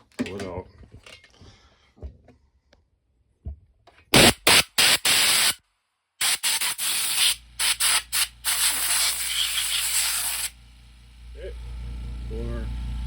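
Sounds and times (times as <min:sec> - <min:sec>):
compressed air hissing blasts: 0:04.2 - 0:05.6, 0:06.2 - 0:10.6.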